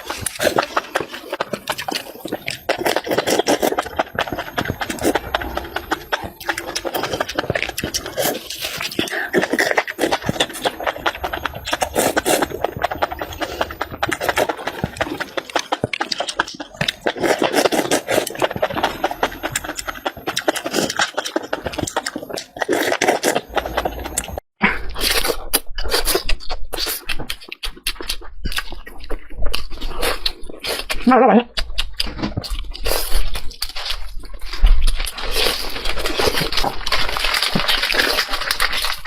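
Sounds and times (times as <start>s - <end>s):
person chewing wetly: 0.0s - 24.4s, 25.8s - 31.0s.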